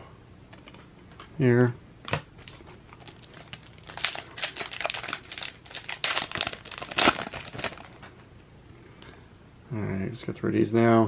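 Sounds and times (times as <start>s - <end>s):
card pack wrapper crinkling: 2.1s - 8.2s.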